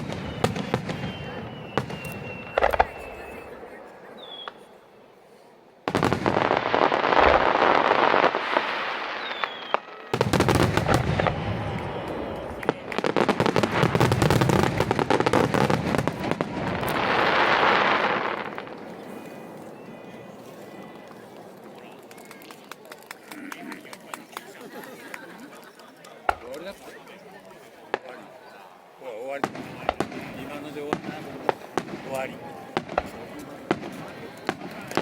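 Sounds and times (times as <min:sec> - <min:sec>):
fireworks booming: 0:00.0 - 0:04.7, 0:05.8 - 0:22.4, 0:26.2 - 0:26.8, 0:29.3 - 0:35.0
fireworks crackling: 0:00.0 - 0:04.9, 0:05.8 - 0:35.0.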